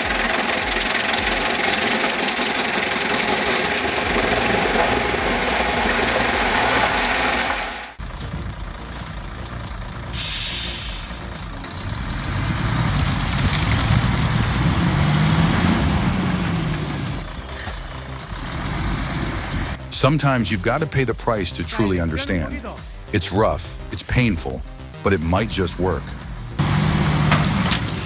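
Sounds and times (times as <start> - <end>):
heavy diesel machinery running: 0.0 - 19.8
engine revving: 0.0 - 20.1, 22.4 - 28.0
air hiss: 0.0 - 25.0.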